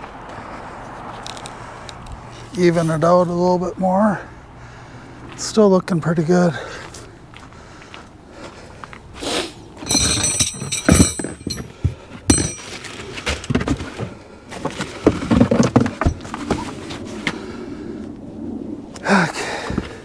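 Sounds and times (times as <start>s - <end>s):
metal clinking: 9.8s - 12.8s.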